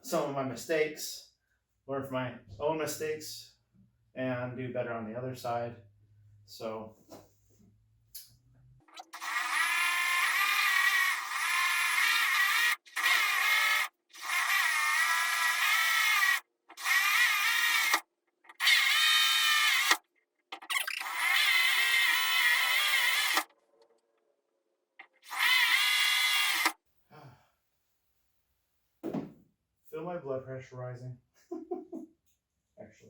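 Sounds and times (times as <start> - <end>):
cordless drill motor whine: 9.0 - 20.0, 20.8 - 23.5, 25.2 - 26.8.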